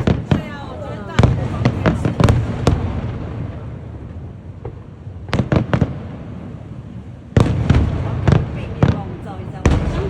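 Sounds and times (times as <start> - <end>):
steady low rumble: 0.0 - 5.3
fireworks bursting: 0.0 - 6.6, 7.3 - 10.0.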